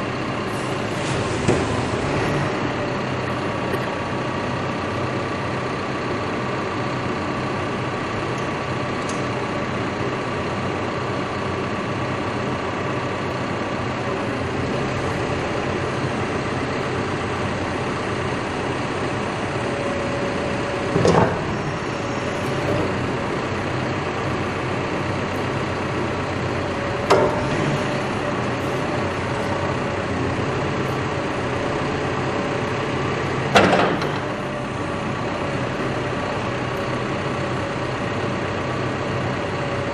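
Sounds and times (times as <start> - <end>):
diesel engine running: 0.0 - 39.9
loud knocks: 33.5 - 34.3.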